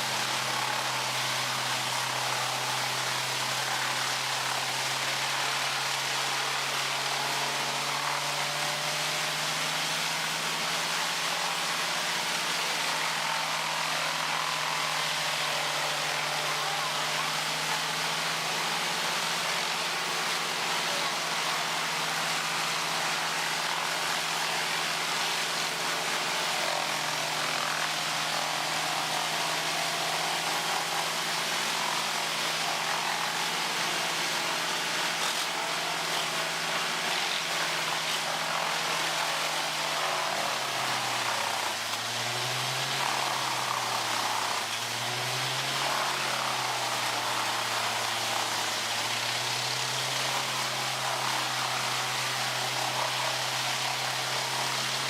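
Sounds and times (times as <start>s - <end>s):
wood being chipped: 0.0s - 55.0s
wood chipper engine running: 0.0s - 55.0s.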